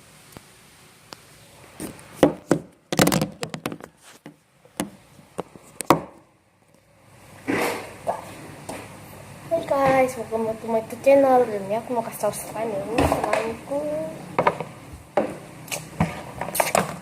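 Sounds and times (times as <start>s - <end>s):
knocks and taps from handling objects: 2.2s - 6.2s, 14.4s - 15.4s.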